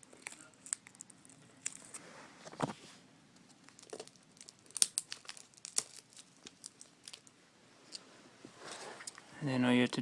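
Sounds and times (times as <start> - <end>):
adhesive tape crinkling: 0.0 - 2.0, 3.4 - 7.4.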